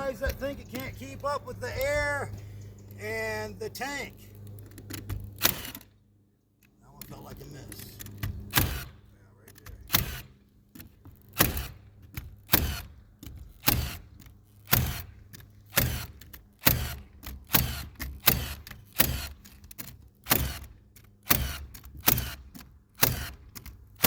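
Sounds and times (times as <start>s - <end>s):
nail gun firing: 5.4s - 5.9s, 8.5s - 9.0s, 9.8s - 10.4s, 11.4s - 13.0s, 13.6s - 19.5s, 20.2s - 24.0s.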